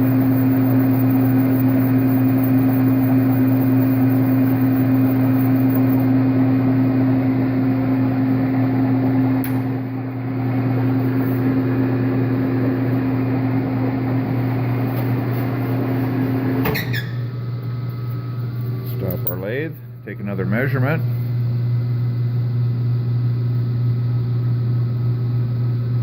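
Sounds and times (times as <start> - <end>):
metal lathe humming: 0.0 - 17.8.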